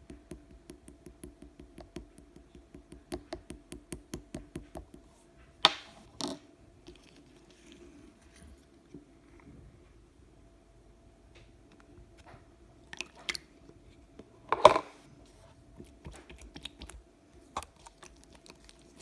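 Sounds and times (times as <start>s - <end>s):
faint handling sounds: 5.0s - 10.0s, 11.3s - 19.0s.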